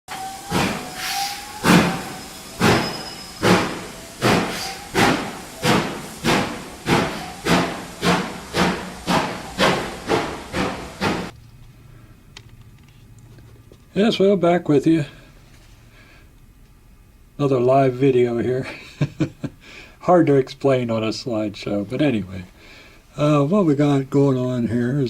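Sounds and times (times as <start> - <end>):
steam locomotive chuffing: 0.1 - 11.4.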